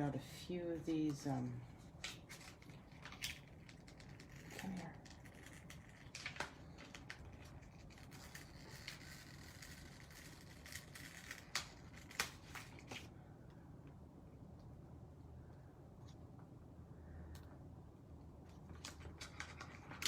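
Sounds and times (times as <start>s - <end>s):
light paper rustling: 0.9s - 13.2s, 18.5s - 20.0s.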